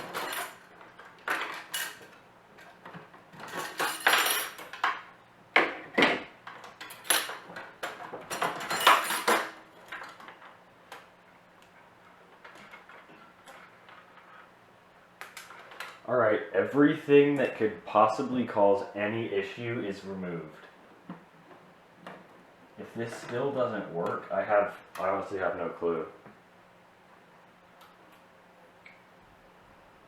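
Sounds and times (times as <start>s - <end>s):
computer parts clattering and knocking: 0.0s - 11.1s, 11.8s - 14.5s
faint steady hum: 0.0s - 30.0s.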